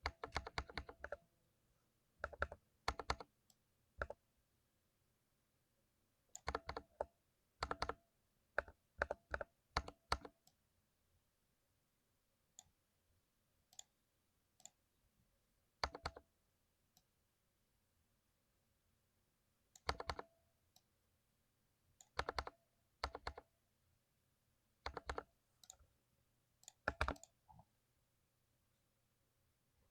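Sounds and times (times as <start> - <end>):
mechanical keyboard typing: 0.0 - 1.2, 2.2 - 3.3, 6.4 - 7.0, 7.6 - 8.0, 8.6 - 10.4, 19.8 - 20.3, 22.0 - 23.4, 24.9 - 25.8, 26.7 - 27.3.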